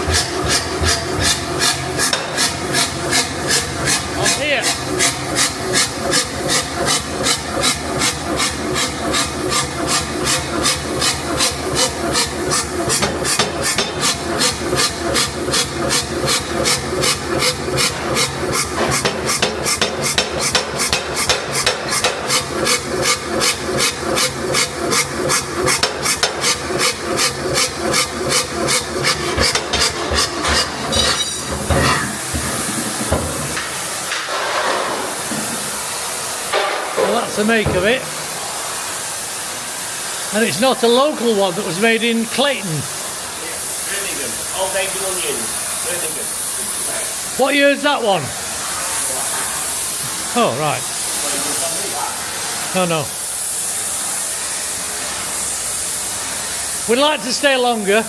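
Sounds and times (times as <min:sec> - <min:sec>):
power hammer striking steel: 0:00.0 - 0:35.9, 0:36.5 - 0:38.4
steady hiss: 0:32.2 - 0:58.0.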